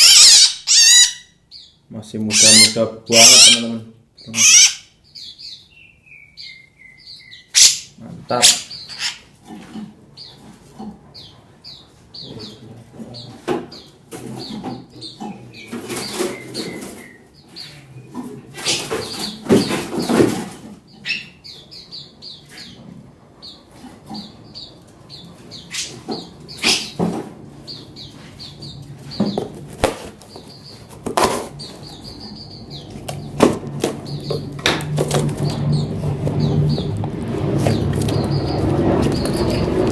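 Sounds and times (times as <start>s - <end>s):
songbirds chirping: 0.0s - 39.9s
wings flapping: 33.1s - 39.9s.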